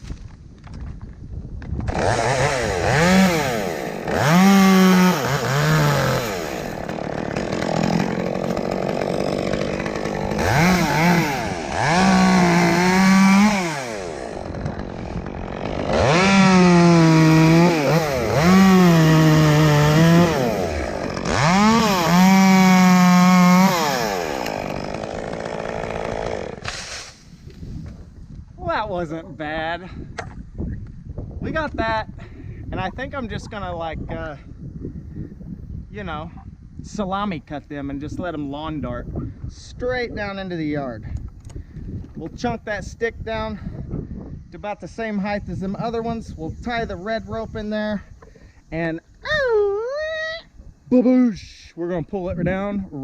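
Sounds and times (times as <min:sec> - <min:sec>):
chainsaw revving: 0:01.9 - 0:27.2.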